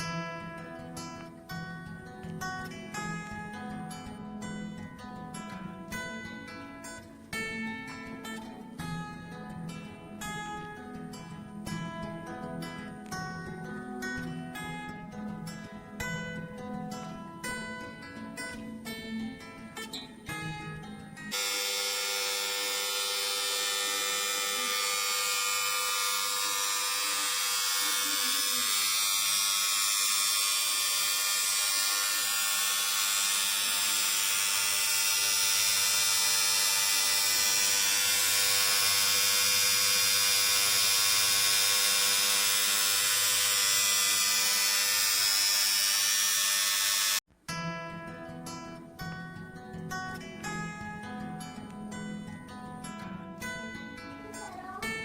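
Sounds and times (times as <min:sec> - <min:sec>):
contactor buzzing with electrical hum: 0:21.3 - 0:47.2.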